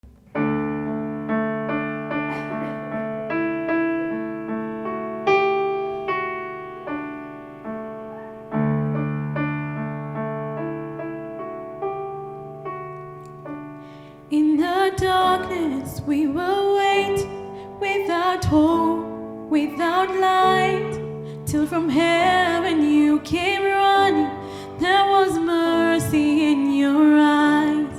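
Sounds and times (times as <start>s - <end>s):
piano chords: 0.0s - 27.9s
person singing: 14.3s - 27.9s.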